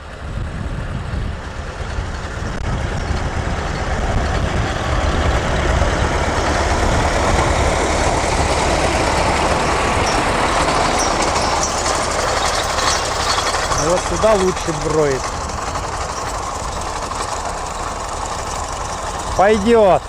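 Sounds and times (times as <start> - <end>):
tractor engine running: 0.0 - 20.0
wind buffeting microphone: 0.0 - 20.0.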